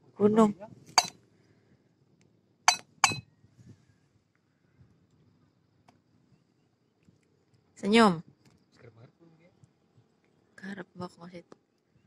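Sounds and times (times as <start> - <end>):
ringing clinks: 2.7 - 3.2.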